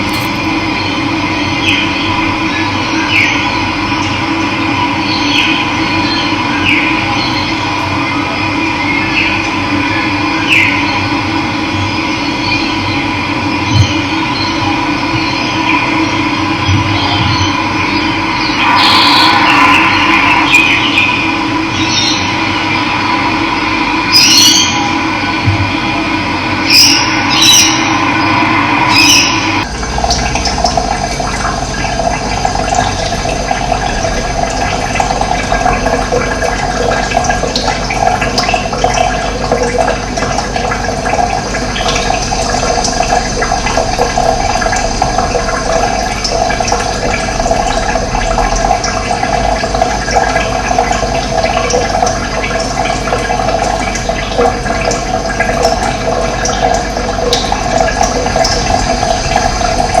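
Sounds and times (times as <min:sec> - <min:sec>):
water rushing: 0:16.4 - 1:00.0.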